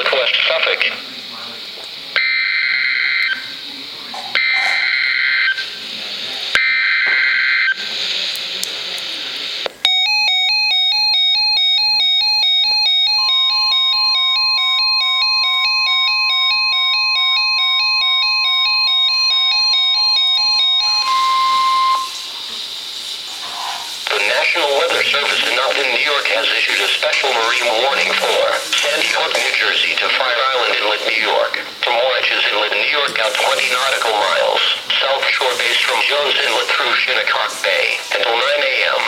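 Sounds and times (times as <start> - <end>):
static hiss: 0.0 - 9.9, 20.8 - 39.0
steady warning alarm tone: 2.1 - 7.9, 9.9 - 39.0
alternating electronic alarm: 2.2 - 3.7, 4.4 - 5.8, 6.6 - 7.8, 9.9 - 22.8, 24.0 - 39.0
screeching two-tone data burst: 17.6 - 22.5, 24.0 - 39.0.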